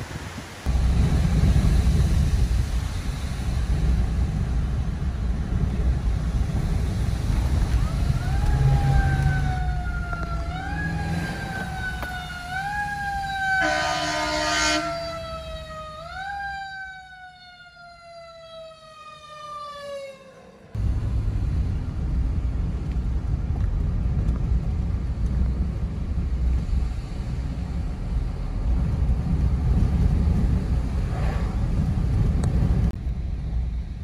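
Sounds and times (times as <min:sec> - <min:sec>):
low wind rumble: 0:00.0 - 0:16.6, 0:20.5 - 0:34.0
emergency vehicle siren wailing: 0:07.5 - 0:20.8
short horn blast: 0:13.6 - 0:15.0.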